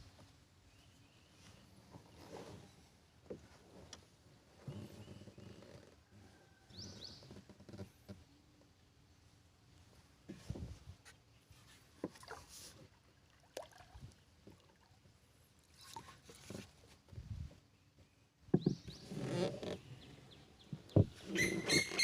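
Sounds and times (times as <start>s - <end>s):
bird calls: 19.8s - 22.0s.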